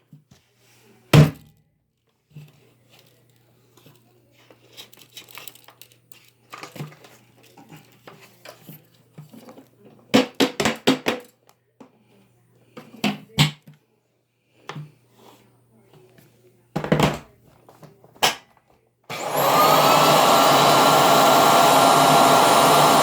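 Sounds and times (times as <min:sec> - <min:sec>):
crinkling and rustling: 0:02.0 - 0:10.1.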